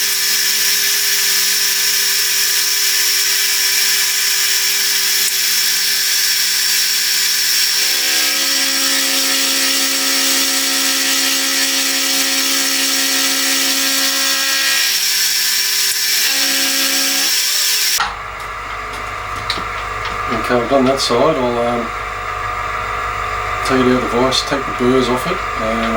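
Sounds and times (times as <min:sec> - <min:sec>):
machine tool cutting steel: 0:00.0 - 0:18.1.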